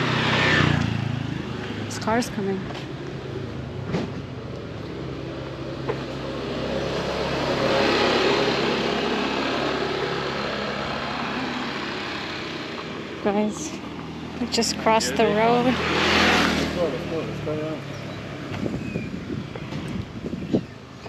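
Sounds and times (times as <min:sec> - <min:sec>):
car driving past: 0:13.5 - 0:18.8.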